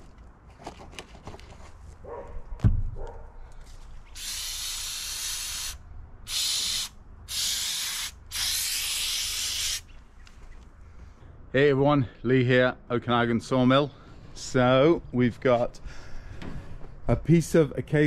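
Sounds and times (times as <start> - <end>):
loud thump: 2.6 - 3.0
aerosol spray hissing: 4.2 - 9.8.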